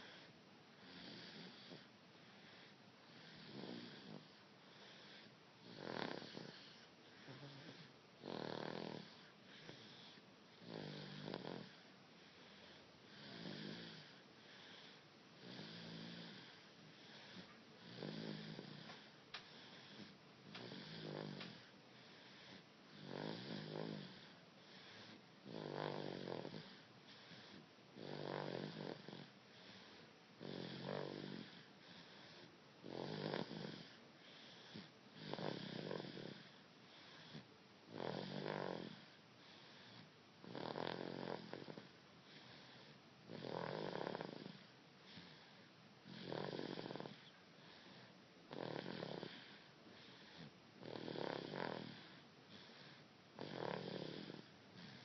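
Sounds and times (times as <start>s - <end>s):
soft breathing: 0.0s - 18.0s, 18.6s - 23.0s, 24.0s - 25.5s, 26.4s - 28.0s, 28.9s - 30.4s, 31.0s - 32.8s, 33.7s - 35.5s, 36.2s - 37.6s, 38.9s - 40.2s, 41.4s - 43.2s, 44.2s - 45.9s, 46.9s - 50.7s, 51.7s - 53.4s
baby snoring: 0.0s - 55.0s.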